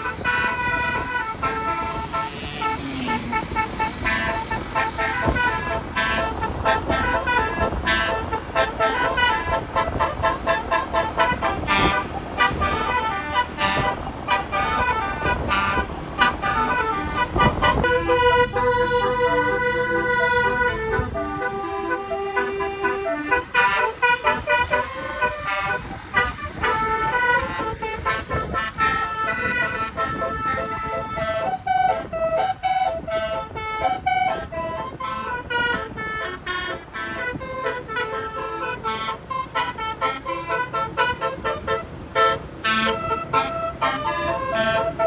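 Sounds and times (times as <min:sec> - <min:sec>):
low vehicle rumble: 0:00.0 - 0:45.0
musical bus air horn: 0:00.0 - 0:45.0.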